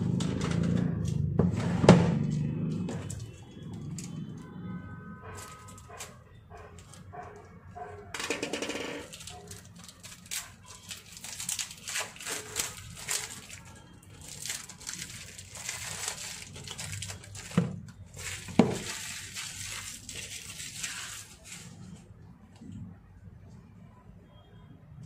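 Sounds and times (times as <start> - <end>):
cellophane and paper crinkling: 8.7 - 22.1.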